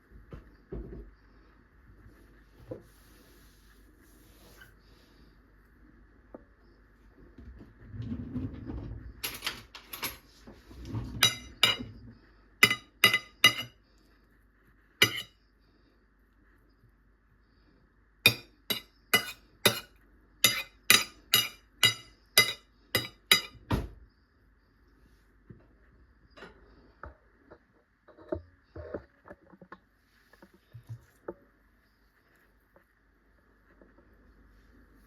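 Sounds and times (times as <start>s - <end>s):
utensils clinking against dishes: 11.2s - 11.9s, 12.6s - 13.8s, 15.0s - 15.3s, 18.3s - 19.9s, 20.5s - 23.6s.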